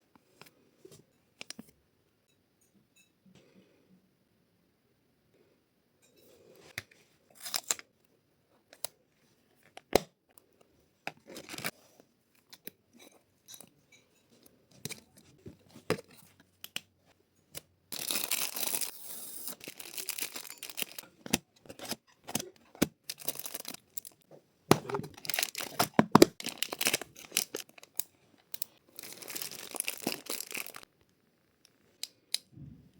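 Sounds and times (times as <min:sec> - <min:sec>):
packaging tearing and rustling: 0:11.2 - 0:11.7, 0:18.0 - 0:30.9
packaging clicks and taps: 0:17.5 - 0:30.8.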